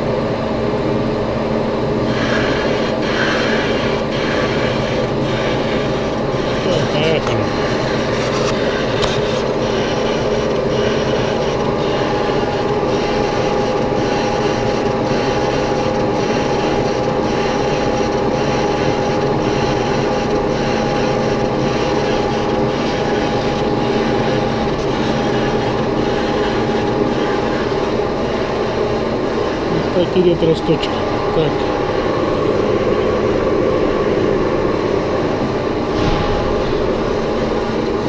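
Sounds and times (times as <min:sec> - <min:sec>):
machine tool whine: 0:00.0 - 0:38.0
boring tool cutting metal: 0:02.0 - 0:31.8.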